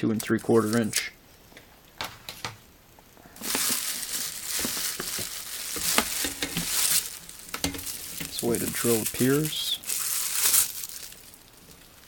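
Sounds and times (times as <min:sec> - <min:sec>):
packaging crinkling and rustling: 0:03.4 - 0:12.0.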